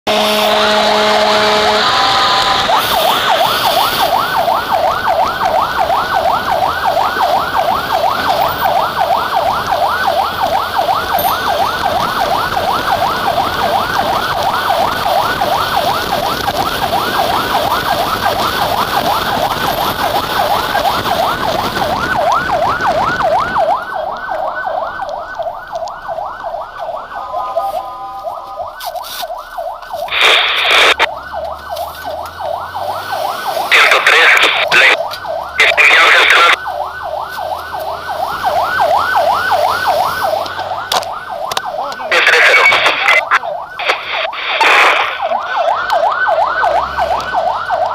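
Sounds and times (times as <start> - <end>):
engine and road noise: 0.0 - 47.9
steady horn-like tones: 0.1 - 3.7
fire engine siren yelping: 0.1 - 47.9.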